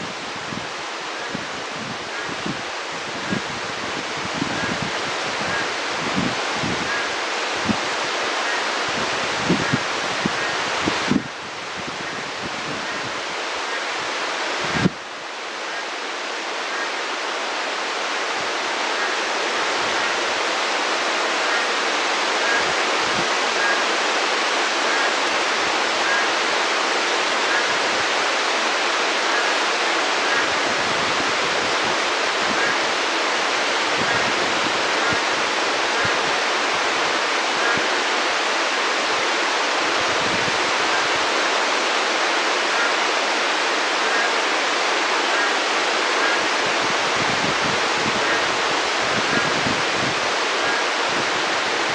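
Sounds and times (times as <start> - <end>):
heavy rain hissing: 0.0 - 51.9.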